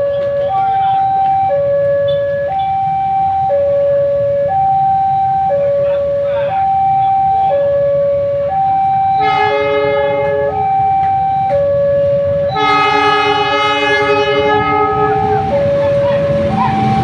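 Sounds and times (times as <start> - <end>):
two-tone warning alarm: 0.0 - 17.0
train horn blasts: 9.0 - 17.0.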